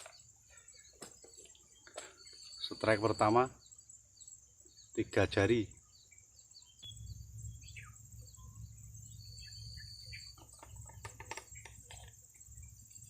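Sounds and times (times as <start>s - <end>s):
insect drone: 0.0s - 13.0s
small birds chirping: 0.0s - 13.0s.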